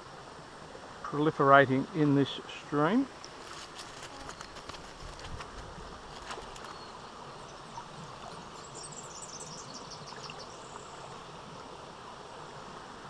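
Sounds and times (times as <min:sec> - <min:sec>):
stream running: 0:00.0 - 0:13.0.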